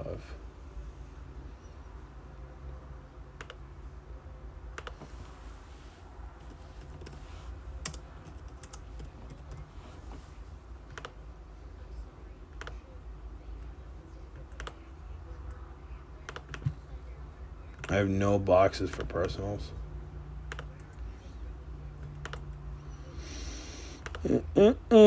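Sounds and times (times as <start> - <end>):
computer keyboard keystrokes: 3.4 - 3.6, 4.8 - 5.0, 7.8 - 9.7, 10.9 - 11.2, 14.4 - 14.8, 16.3 - 16.8, 20.5 - 21.0, 22.1 - 22.6.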